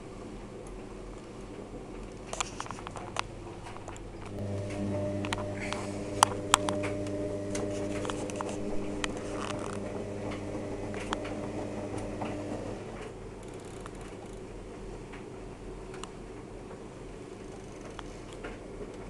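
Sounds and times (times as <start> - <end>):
washing machine motor hum: 4.2 - 13.5.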